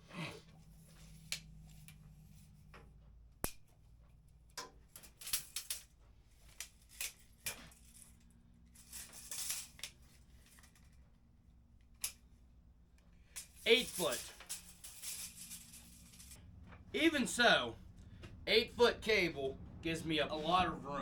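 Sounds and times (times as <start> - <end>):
low steady hum: 5.2 - 21.0.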